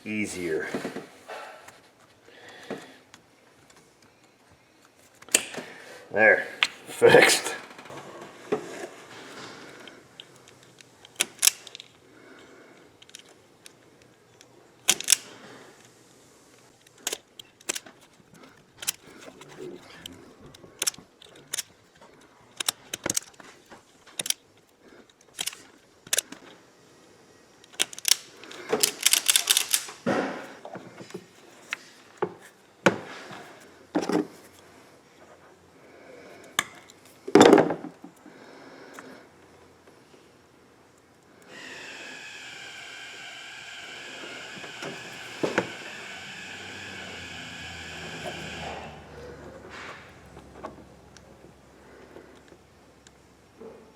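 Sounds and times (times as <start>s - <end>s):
hand tools and metal parts clicking: 9.3s - 26.6s, 27.6s - 32.6s, 44.2s - 53.2s
rattling clicks: 9.8s - 12.0s, 13.0s - 15.9s, 16.6s - 26.5s, 27.6s - 30.1s.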